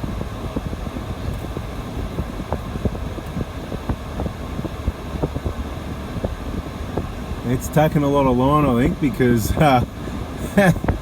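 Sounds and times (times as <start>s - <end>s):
wind buffeting microphone: 0.0s - 7.4s
vehicle engine rumble: 0.0s - 11.0s.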